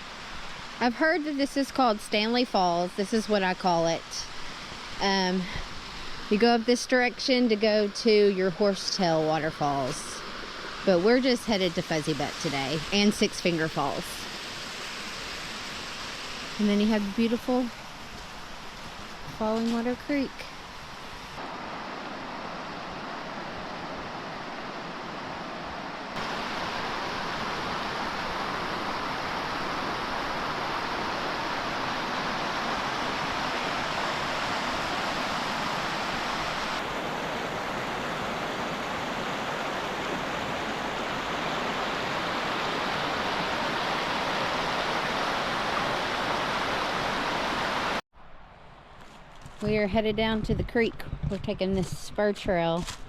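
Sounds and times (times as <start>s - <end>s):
water rushing: 0.0s - 48.8s.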